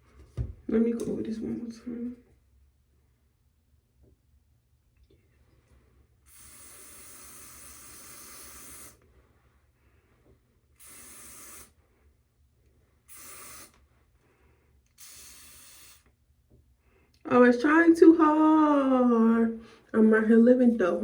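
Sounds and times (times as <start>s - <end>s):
aerosol spray can hissing: 6.3s - 9.0s, 10.8s - 11.8s, 13.1s - 13.8s, 15.0s - 16.1s.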